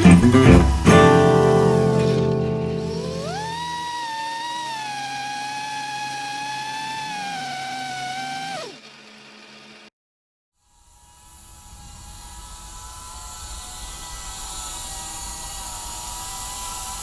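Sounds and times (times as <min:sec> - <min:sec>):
guitar music: 0:00.0 - 0:03.8
quadcopter motors whining: 0:00.0 - 0:09.9, 0:10.7 - 0:17.0.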